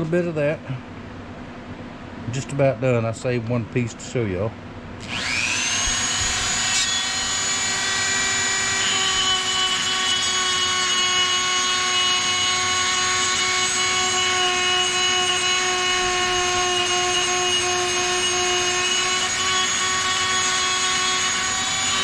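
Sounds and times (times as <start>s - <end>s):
rotary tool whining: 5.0s - 22.0s.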